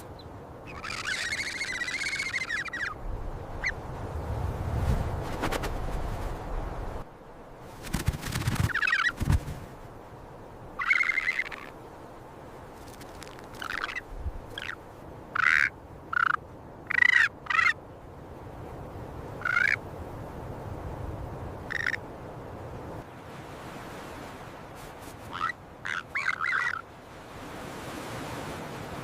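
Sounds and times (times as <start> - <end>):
steady background hiss: 0.0 - 29.0
ravens croaking: 13.2 - 17.8, 25.3 - 26.9.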